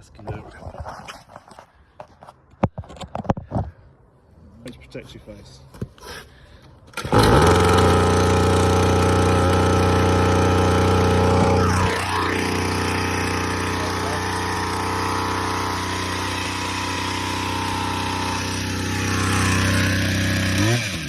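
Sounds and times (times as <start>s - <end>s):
small two-stroke engine idling: 7.0s - 21.0s.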